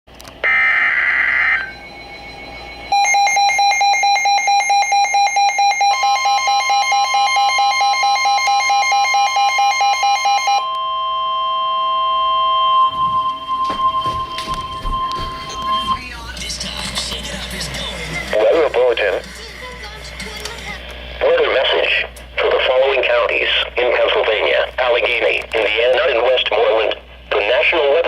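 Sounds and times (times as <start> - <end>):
rapid pulsing alarm beep: 0.4 - 16.6
steady warning alarm tone: 0.4 - 17.2.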